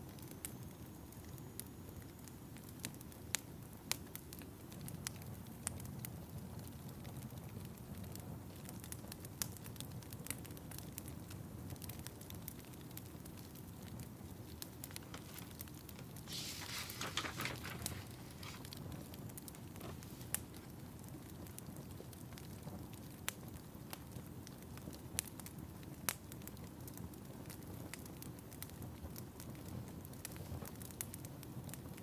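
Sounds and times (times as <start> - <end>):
fire crackling and popping: 0.0 - 32.0
loud rustling flurry: 16.3 - 18.6.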